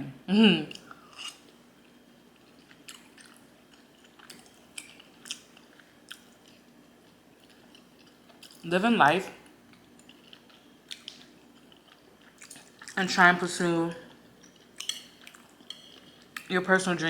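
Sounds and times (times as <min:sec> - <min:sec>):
wet chewing clicks and smacks: 0:02.4 - 0:06.6, 0:09.7 - 0:13.0, 0:14.1 - 0:16.5.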